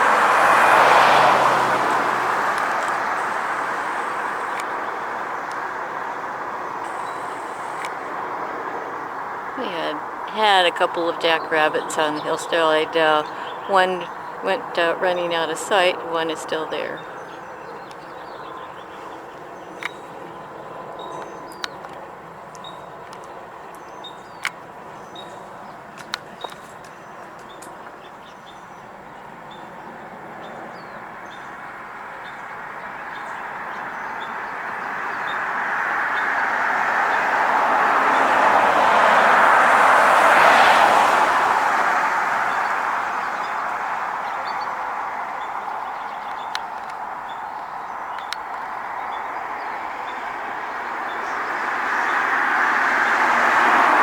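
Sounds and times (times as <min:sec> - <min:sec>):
car tyres rushing on pavement: 0:00.0 - 0:10.6, 0:31.8 - 0:54.0
vehicle road noise: 0:00.0 - 0:54.0.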